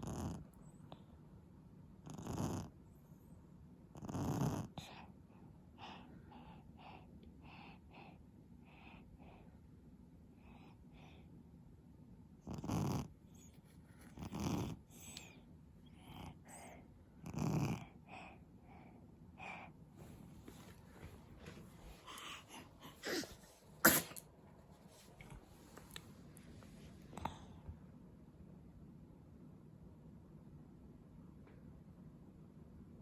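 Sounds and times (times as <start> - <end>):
faint breath sounds: 4.8 - 11.5, 14.8 - 17.0, 17.8 - 24.2
baby snoring: 22.0 - 24.2.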